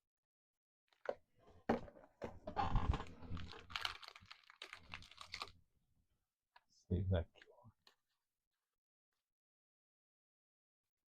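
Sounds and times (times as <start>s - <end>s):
cards and packaging crinkling: 2.7s - 5.6s.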